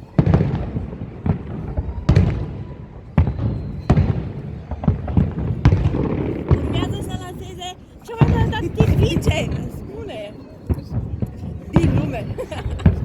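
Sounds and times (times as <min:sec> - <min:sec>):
fireworks booming: 0:00.0 - 0:13.0.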